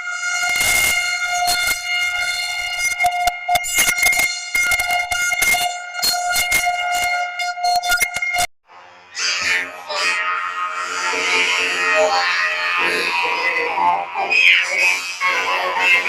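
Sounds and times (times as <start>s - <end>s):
rapid digital clicks: 0.4s - 7.1s
digitally altered buzzing burp: 9.2s - 16.0s.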